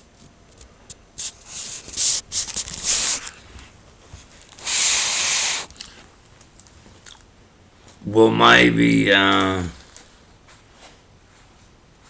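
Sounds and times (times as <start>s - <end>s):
steady hiss: 1.2s - 3.5s, 4.2s - 6.0s.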